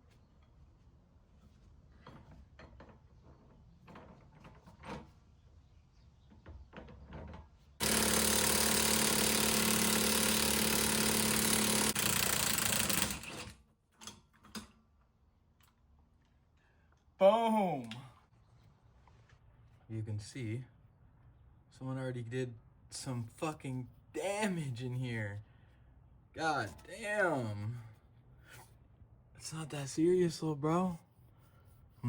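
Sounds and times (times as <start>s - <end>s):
impact wrench hammering: 7.8s - 13.4s.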